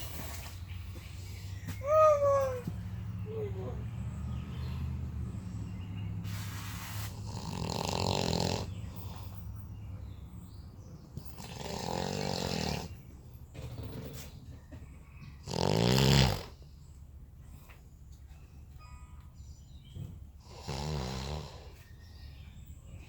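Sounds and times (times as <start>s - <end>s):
man snoring loudly: 7.2s - 8.8s, 11.4s - 13.0s, 15.4s - 16.6s, 20.4s - 21.7s.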